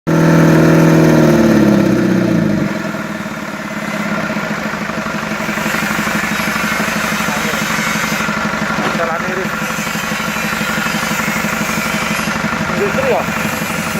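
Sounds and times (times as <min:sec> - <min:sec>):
diesel engine idling: 0:00.1 - 0:13.9.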